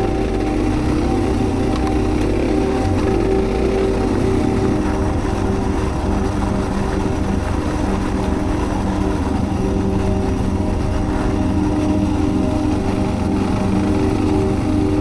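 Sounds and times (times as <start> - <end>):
low rumble: 0.0 - 15.0
motorcycle engine running: 0.0 - 15.0.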